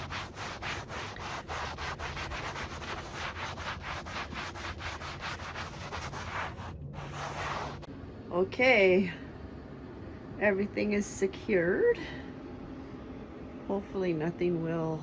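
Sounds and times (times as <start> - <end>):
rapid scraping strokes: 0.0 - 7.9
faint low hum: 0.0 - 15.0.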